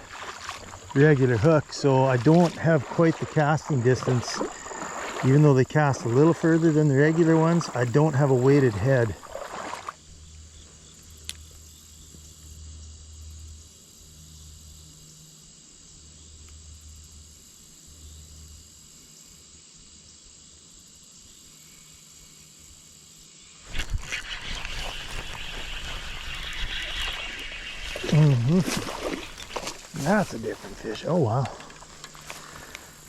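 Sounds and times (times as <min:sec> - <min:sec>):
click: 0:11.2 - 0:11.5
high-pitched insect chirring: 0:20.8 - 0:33.0.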